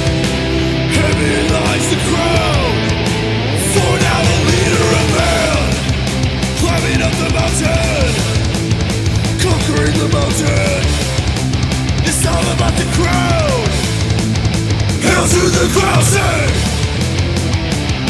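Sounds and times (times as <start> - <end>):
instrumental heavy metal music: 0.0 - 18.0.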